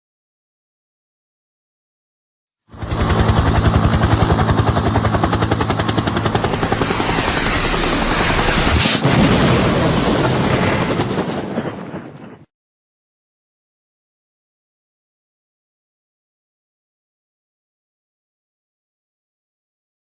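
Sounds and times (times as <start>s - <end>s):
helicopter rotor chop: 2.7s - 12.4s.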